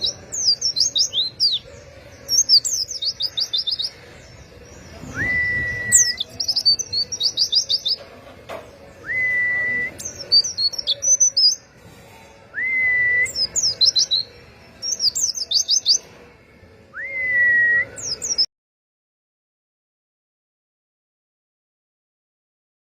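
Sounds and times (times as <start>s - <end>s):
birds chirping trills: 0.0s - 18.5s
bird whistle: 5.1s - 6.3s.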